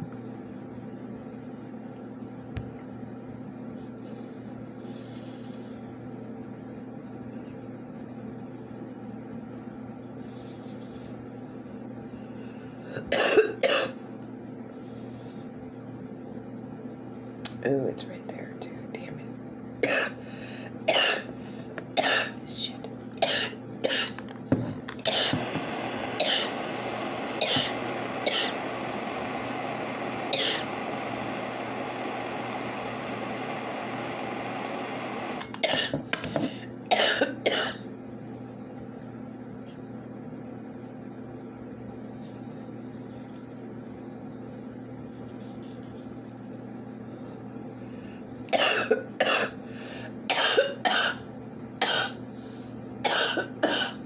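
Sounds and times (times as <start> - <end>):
person coughing hard: 13.0 - 14.0, 19.8 - 20.2, 20.9 - 21.3, 22.0 - 22.4, 23.2 - 24.2, 25.1 - 25.4, 26.2 - 26.6, 27.4 - 28.6, 30.4 - 30.6, 35.6 - 36.1, 36.9 - 37.8, 48.5 - 49.6, 50.3 - 52.2, 53.0 - 54.0
steady hiss: 25.0 - 35.8.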